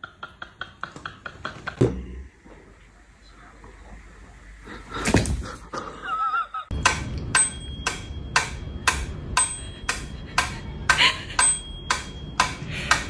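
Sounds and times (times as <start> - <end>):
low continuous hum: 1.7 - 13.0
metallic ticks ringing: 6.7 - 13.0.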